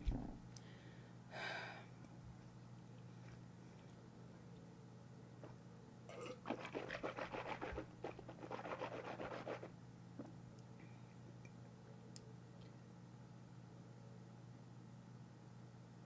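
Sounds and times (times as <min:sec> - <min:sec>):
steady low hum: 0:00.0 - 0:16.0
rapid rasping scratching: 0:06.4 - 0:09.7.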